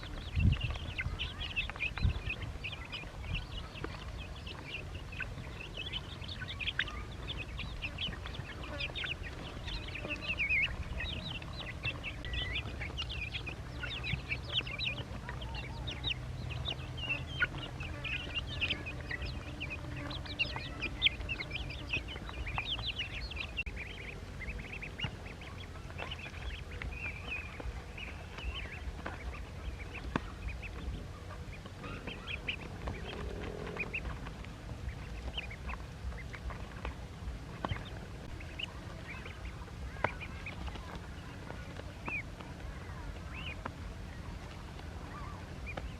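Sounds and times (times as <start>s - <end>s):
ducklings peeping: 0.0s - 45.9s.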